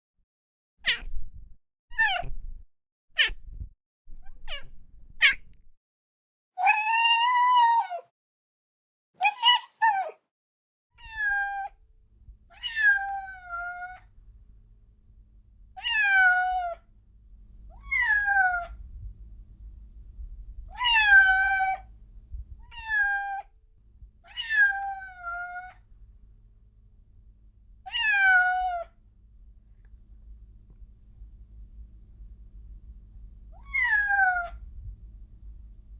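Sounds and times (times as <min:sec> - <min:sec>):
cat meowing: 0:00.9 - 0:01.1, 0:11.0 - 0:11.8, 0:12.5 - 0:14.1, 0:15.8 - 0:16.8, 0:17.7 - 0:18.8, 0:20.7 - 0:21.9, 0:22.6 - 0:23.5, 0:24.2 - 0:25.8, 0:27.9 - 0:29.0, 0:33.5 - 0:34.6
faint low rumble: 0:01.0 - 0:02.6, 0:03.2 - 0:05.7, 0:11.0 - 0:35.9.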